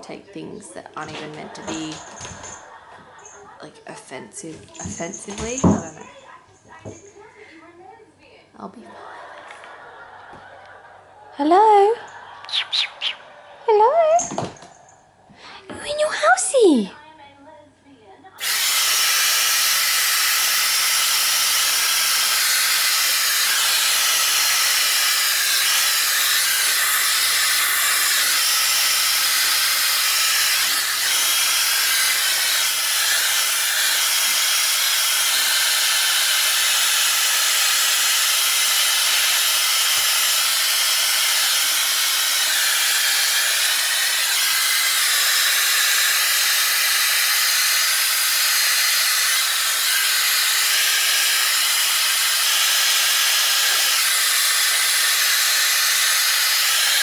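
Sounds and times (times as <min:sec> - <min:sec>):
loud steady hissing: 0:18.4 - 0:57.0.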